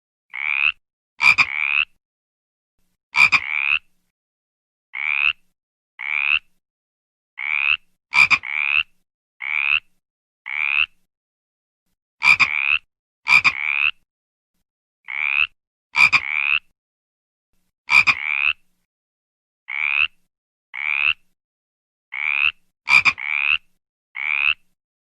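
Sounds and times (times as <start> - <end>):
frog croaking: 0.3 - 2.0, 3.2 - 3.9, 5.0 - 5.4, 6.0 - 6.5, 7.4 - 9.9, 10.5 - 11.0, 12.2 - 14.0, 15.1 - 16.7, 17.9 - 18.6, 19.7 - 20.2, 20.8 - 21.2, 22.1 - 24.7.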